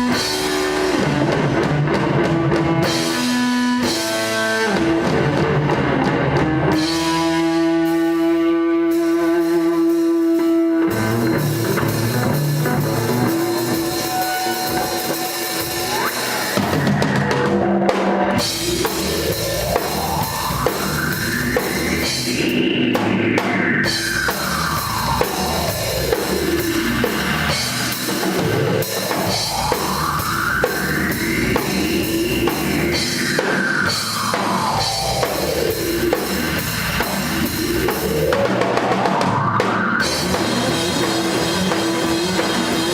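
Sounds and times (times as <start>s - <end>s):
drum kit: 0.0s - 42.9s
rock band playing live: 0.0s - 42.9s
tone sweeping up and down: 18.4s - 42.8s.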